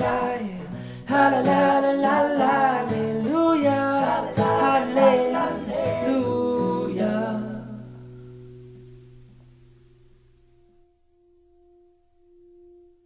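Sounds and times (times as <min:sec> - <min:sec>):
man singing: 0:00.0 - 0:08.0
acoustic guitar: 0:00.0 - 0:13.0.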